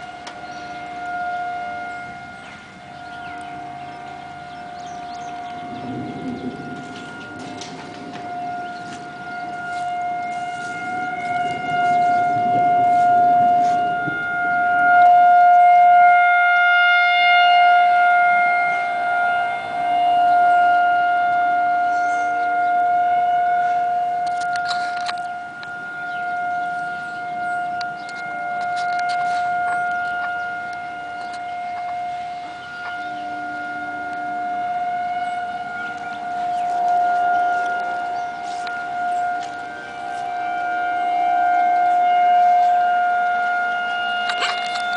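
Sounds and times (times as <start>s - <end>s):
tornado warning sirens wailing: 0.0s - 44.9s.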